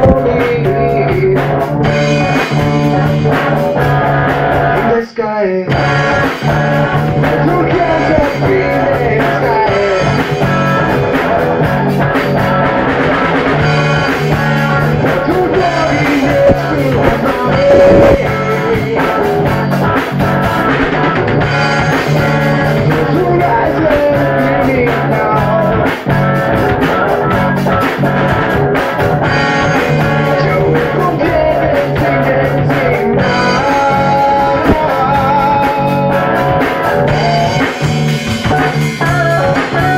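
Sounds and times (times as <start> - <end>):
person singing: 0.0 - 3.6, 4.8 - 10.8, 13.6 - 20.6, 21.4 - 26.1, 29.3 - 39.9
drum kit: 0.0 - 5.0, 5.7 - 39.9
guitar: 0.0 - 39.9.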